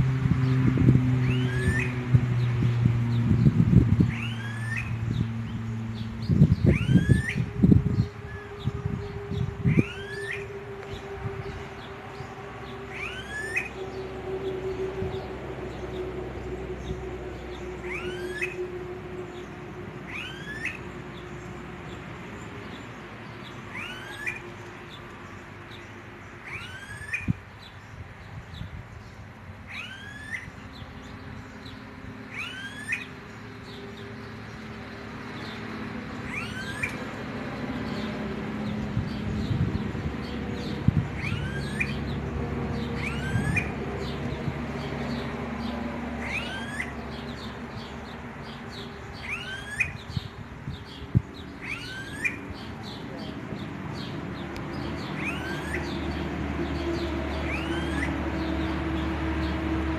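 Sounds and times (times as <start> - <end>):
bird whining upslurred whistle call: 6.7 - 7.5, 9.4 - 10.6, 12.9 - 13.8, 20.1 - 20.8, 26.5 - 27.3, 32.4 - 33.1, 36.3 - 37.0, 41.2 - 42.0, 43.0 - 43.7, 46.2 - 46.9, 49.2 - 50.0, 51.6 - 52.4, 55.2 - 55.9, 57.5 - 58.2.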